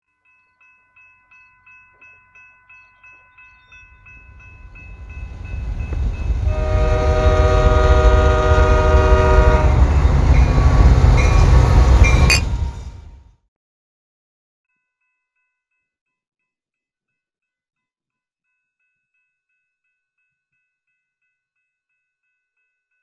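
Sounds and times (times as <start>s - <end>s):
crossing bell ringing: 0.6s - 13.0s
train rumble: 3.9s - 13.2s
train horn blast: 4.6s - 13.2s.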